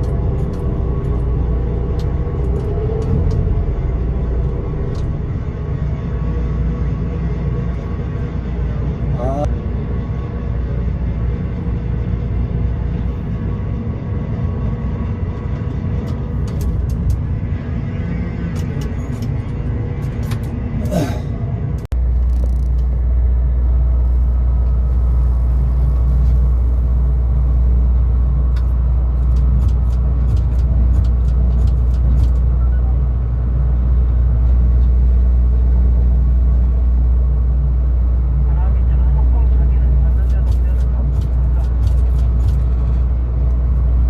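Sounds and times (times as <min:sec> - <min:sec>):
crane cab rumble in wind: 0:00.0 - 0:44.0
sharp clicks and rattles: 0:15.6 - 0:17.3, 0:28.5 - 0:32.5, 0:40.0 - 0:43.6.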